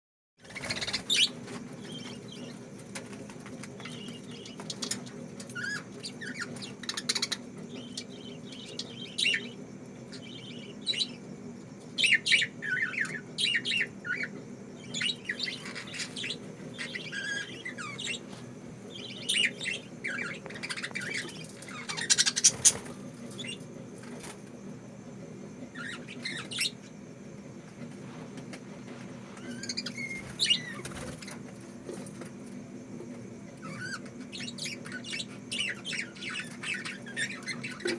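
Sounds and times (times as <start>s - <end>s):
lovebirds chirping and squeaking: 0.4s - 2.6s, 3.8s - 11.2s, 12.0s - 18.3s, 18.9s - 23.7s, 25.7s - 26.9s, 29.4s - 31.5s, 33.6s - 37.9s.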